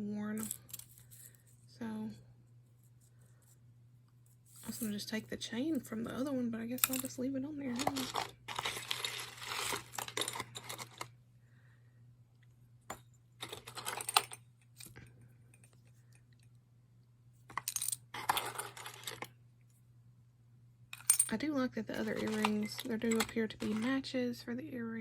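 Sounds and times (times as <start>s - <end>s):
metal jewelry clinking: 0.4s - 1.5s, 4.5s - 5.1s, 6.8s - 11.1s, 13.4s - 15.0s, 17.5s - 19.3s, 21.0s - 21.3s, 22.0s - 24.0s.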